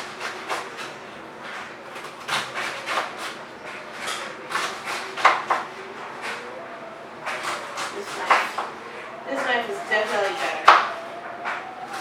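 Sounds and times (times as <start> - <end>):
knife slicing cabbage on board: 0.0 - 1.0, 1.9 - 3.4, 4.1 - 5.7.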